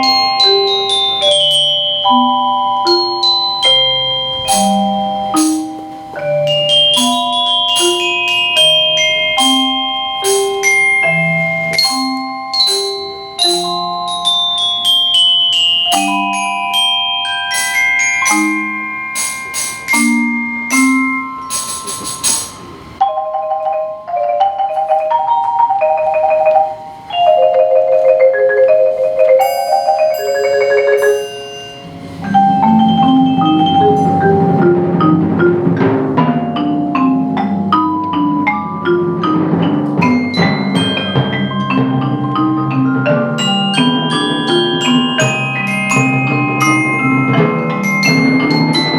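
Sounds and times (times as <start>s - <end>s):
shimmering wash: 0.0s - 23.0s
glockenspiel notes: 0.0s - 48.9s
marimba bass notes: 0.0s - 48.9s.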